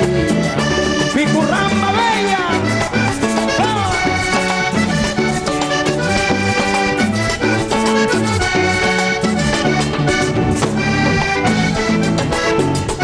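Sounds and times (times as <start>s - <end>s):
accordion melody: 0.0s - 13.0s
bass: 0.0s - 13.0s
hand percussion: 0.0s - 13.0s.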